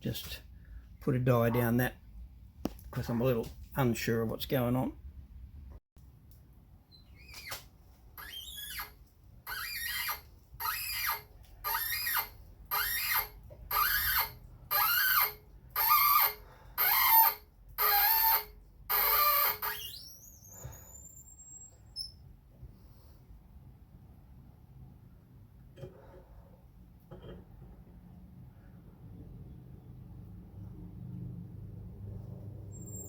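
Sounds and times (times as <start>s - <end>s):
threading die squealing: 8.2s - 22.3s, 32.6s - 33.0s.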